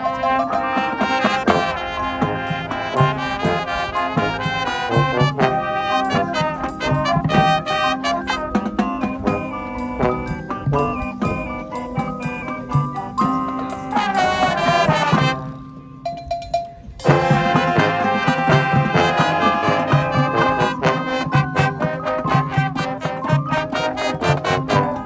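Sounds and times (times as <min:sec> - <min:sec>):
drum line: 0:00.0 - 0:15.6, 0:16.2 - 0:25.0
brass chords: 0:00.0 - 0:15.8, 0:17.0 - 0:25.0
marching band playing: 0:00.0 - 0:25.0.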